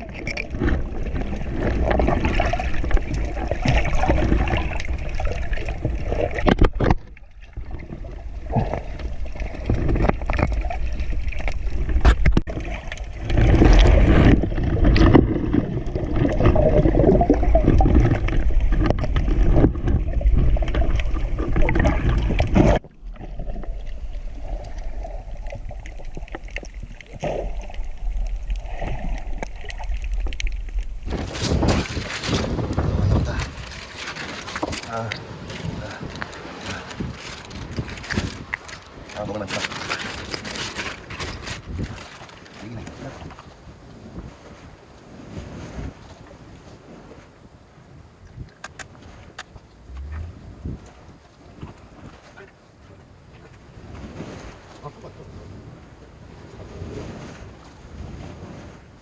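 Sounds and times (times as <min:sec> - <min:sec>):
seawater churning in heavy surf: 0:00.0 - 0:06.5, 0:31.1 - 0:48.2, 0:48.9 - 0:59.0.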